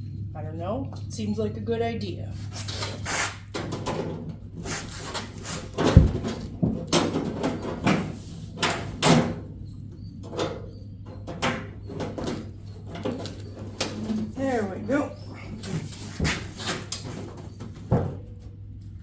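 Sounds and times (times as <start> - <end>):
steady low hum: 0.0 - 19.0
sheet metal duct knocks and clanks: 3.5 - 9.5, 10.2 - 18.5.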